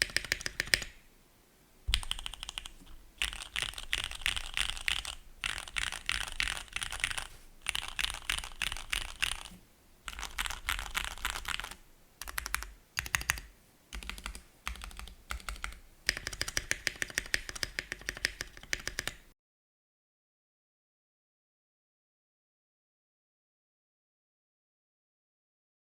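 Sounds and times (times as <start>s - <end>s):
mechanical keyboard typing: 0.0s - 1.0s, 1.9s - 19.2s.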